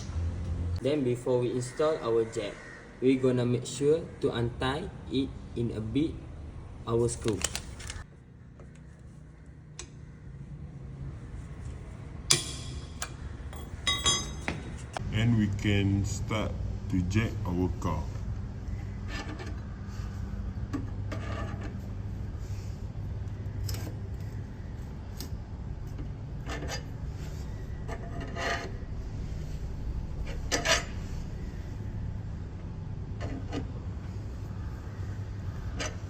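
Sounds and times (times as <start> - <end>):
steady low hum: 8.0 - 36.0
car jack screw scraping: 26.0 - 29.3, 30.1 - 31.2.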